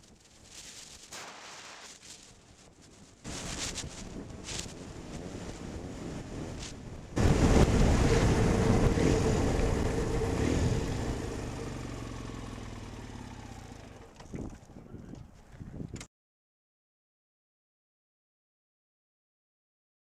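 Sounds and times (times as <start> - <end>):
wind on microphone: 2.3 - 11.9, 14.2 - 16.1
motor vehicle engine: 7.2 - 15.2.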